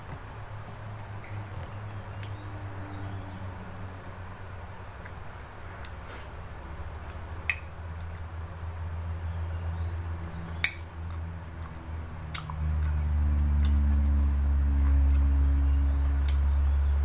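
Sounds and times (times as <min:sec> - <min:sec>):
low steady hum: 0:00.0 - 0:17.0
chewing and mouth sounds: 0:10.6 - 0:15.3.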